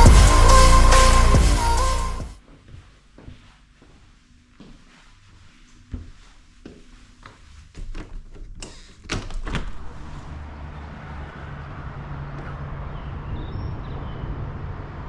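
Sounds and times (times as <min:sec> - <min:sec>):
steady low hum: 0:00.0 - 0:02.3.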